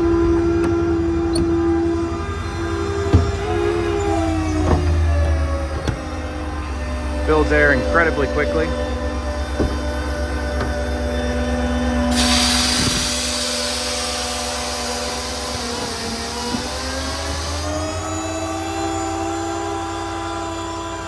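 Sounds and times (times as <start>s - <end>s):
air compressor humming: 0.0s - 19.1s
loud hiss of air: 12.1s - 17.9s.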